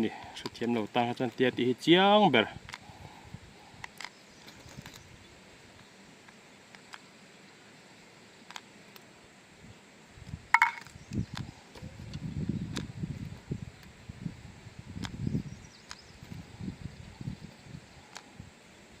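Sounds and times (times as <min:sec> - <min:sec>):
faint mechanical clicks: 0:15.8 - 0:16.4.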